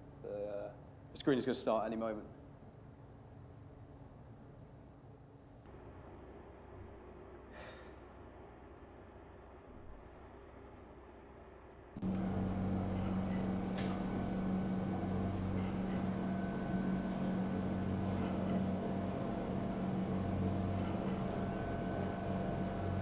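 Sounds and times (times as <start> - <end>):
steady low hum: 5.7 - 23.0.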